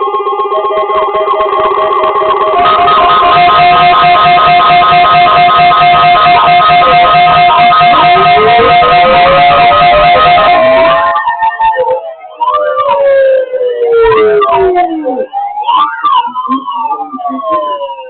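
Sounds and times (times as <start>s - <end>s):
long held tone: 0.0s - 12.2s
loud guitar-led music: 0.7s - 11.2s.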